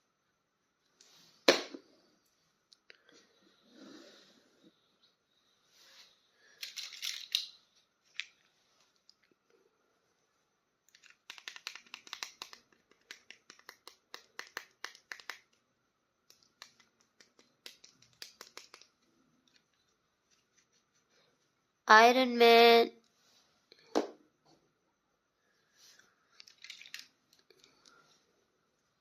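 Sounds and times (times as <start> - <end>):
plastic toy clicks and crinkles: 6.6 - 7.6, 10.9 - 15.6, 16.3 - 18.9, 26.3 - 27.6.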